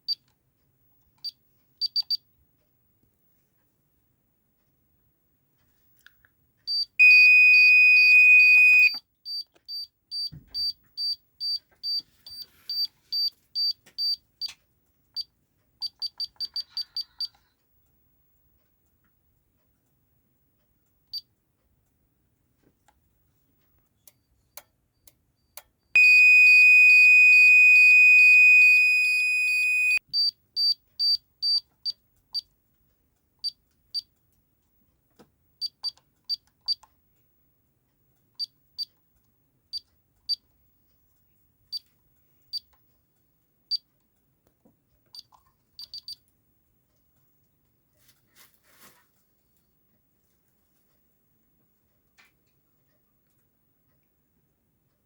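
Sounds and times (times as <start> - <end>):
high-pitched fire alarm tone: 7.0 - 9.0, 26.0 - 30.0
short high beeps: 7.0 - 9.0, 26.0 - 30.0.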